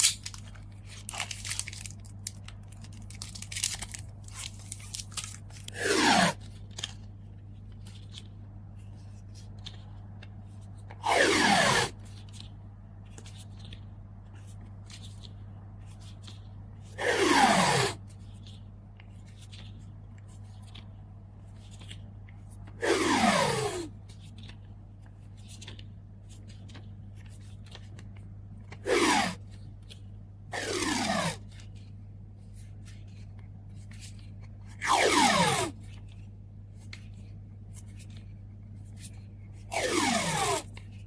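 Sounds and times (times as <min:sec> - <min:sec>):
tape pulled off a roll: 0:22.8 - 0:23.9, 0:28.8 - 0:29.4, 0:30.6 - 0:31.4, 0:34.8 - 0:35.8, 0:39.7 - 0:40.8.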